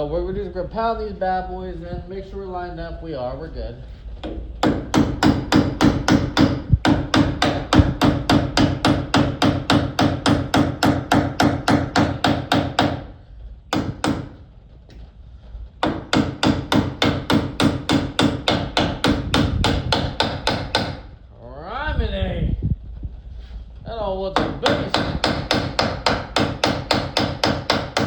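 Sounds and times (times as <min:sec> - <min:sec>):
hammer driving nails into wood: 0:04.2 - 0:13.1, 0:13.7 - 0:14.4, 0:15.8 - 0:21.1, 0:24.4 - 0:28.0.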